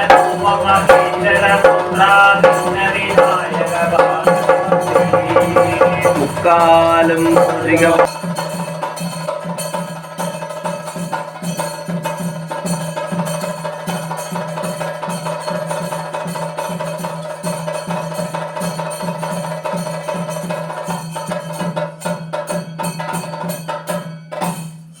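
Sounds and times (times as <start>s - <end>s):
drum fast rhythm: 0.0s - 8.1s
held drone tone: 0.0s - 8.1s
small hand cymbals: 0.0s - 25.0s.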